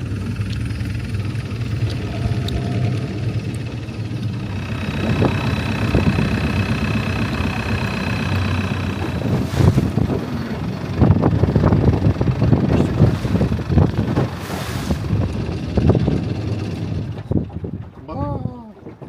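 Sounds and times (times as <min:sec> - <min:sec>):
boat engine rumbling: 0:00.0 - 0:19.0
wind buffeting microphone: 0:00.0 - 0:19.0
thin high whine: 0:00.5 - 0:07.5.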